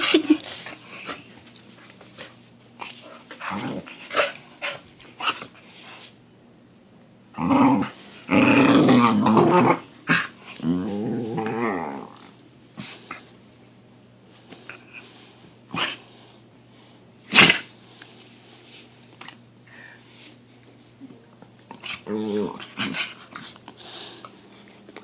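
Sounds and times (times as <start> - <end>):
dog grumbling: 7.3 - 12.3, 21.7 - 23.4.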